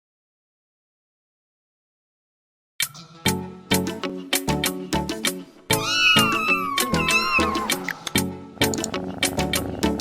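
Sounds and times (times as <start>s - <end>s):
background music with beat: 2.8s - 10.0s
cat meowing: 5.8s - 7.8s.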